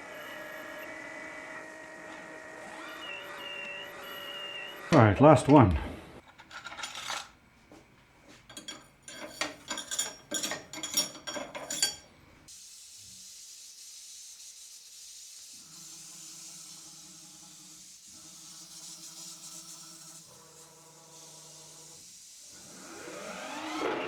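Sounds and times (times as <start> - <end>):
metal tool holders clinking: 6.2 - 7.4, 8.4 - 12.1.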